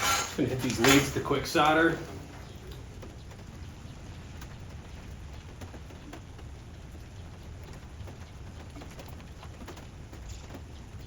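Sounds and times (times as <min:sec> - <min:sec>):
steady rain falling: 0:00.0 - 0:11.0
drops ticking on surfaces: 0:02.6 - 0:11.0.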